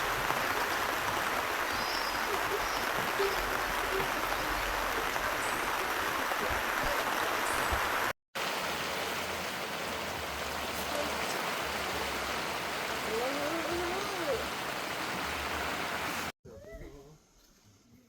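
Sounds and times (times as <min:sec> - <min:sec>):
stream flowing over rocks: 0:00.0 - 0:16.3.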